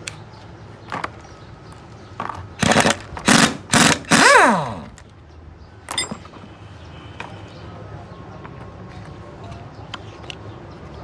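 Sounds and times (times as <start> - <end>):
air blow gun blasts: 2.6 - 4.9.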